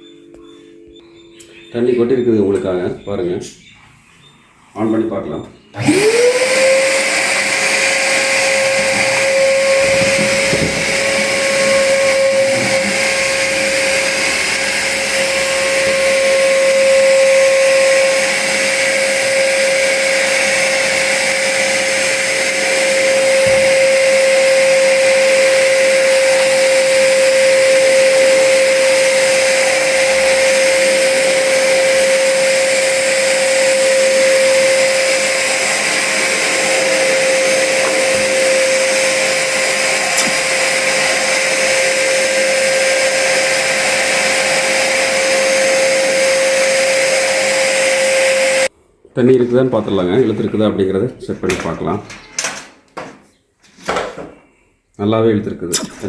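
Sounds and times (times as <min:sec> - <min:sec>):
vacuum cleaner running: 0:05.7 - 0:48.7.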